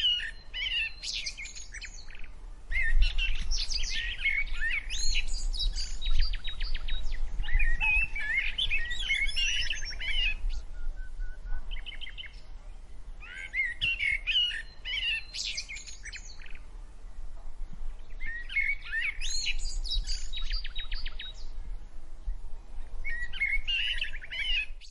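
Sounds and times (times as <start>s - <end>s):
songbird singing: 0.0s - 24.9s.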